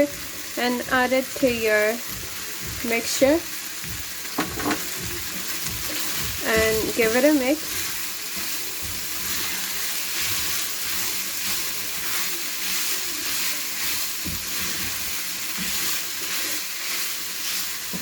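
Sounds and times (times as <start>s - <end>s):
filling sizzling in a pan: 0.0s - 18.0s
soft knocks: 3.9s - 4.9s.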